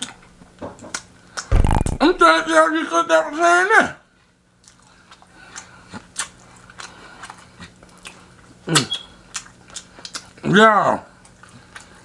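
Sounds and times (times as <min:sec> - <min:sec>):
person chewing fried chicken: 0:00.8 - 0:02.0, 0:04.2 - 0:12.0
person humming mm: 0:01.6 - 0:02.0.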